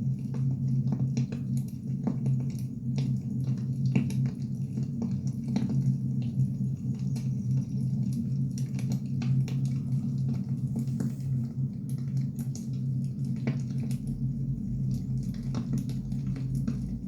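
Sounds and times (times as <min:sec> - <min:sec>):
steady low hum: 0:04.3 - 0:17.0.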